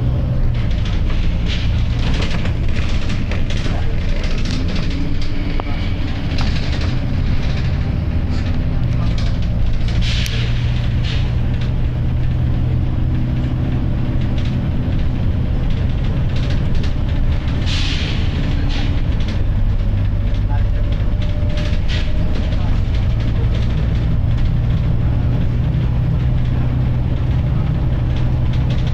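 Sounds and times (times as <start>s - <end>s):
bus diesel engine idling: 0.0s - 28.9s.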